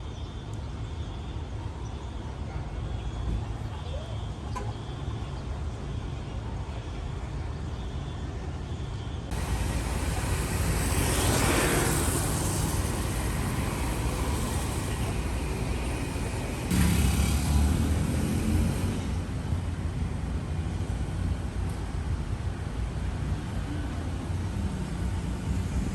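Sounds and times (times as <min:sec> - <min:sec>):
street traffic hum: 0:00.0 - 0:25.9
vehicle passing close: 0:09.3 - 0:19.5.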